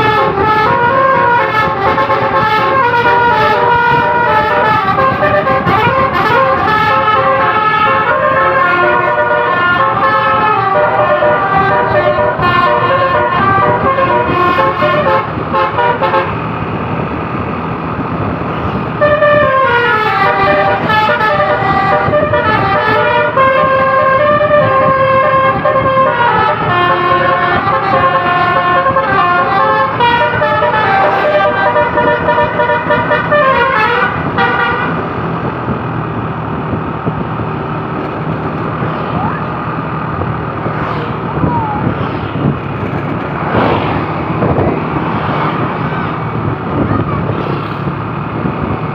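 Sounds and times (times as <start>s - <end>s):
multi-tone bus horn melody: 0.0s - 17.6s, 18.2s - 35.9s
engine rumble: 0.0s - 48.9s.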